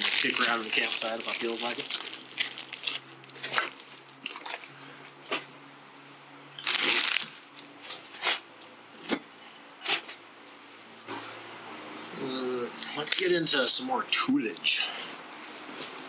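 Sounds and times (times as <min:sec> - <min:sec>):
crinkling rustle: 0:00.0 - 0:04.7, 0:06.6 - 0:08.4.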